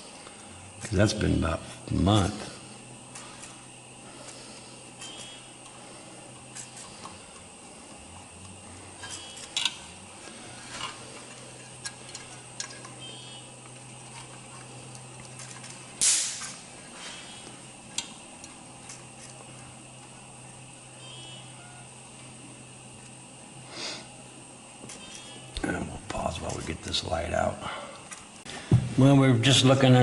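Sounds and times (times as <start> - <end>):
steady low hum: 0.0 - 30.0
small tools clicking and tapping: 8.4 - 9.8, 10.7 - 16.5.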